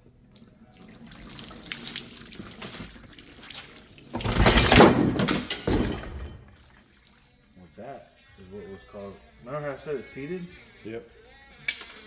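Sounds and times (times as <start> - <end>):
fluid pouring and splashing: 0.3 - 7.4.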